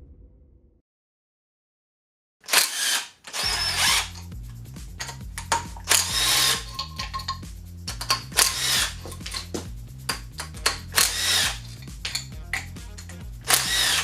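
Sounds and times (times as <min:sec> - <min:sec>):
power tool running in bursts: 0:02.5 - 0:04.2, 0:05.9 - 0:07.2, 0:08.4 - 0:09.4, 0:10.9 - 0:11.8, 0:13.5 - 0:14.0
small clicks: 0:02.5 - 0:04.2
background music with bassline: 0:03.5 - 0:14.0.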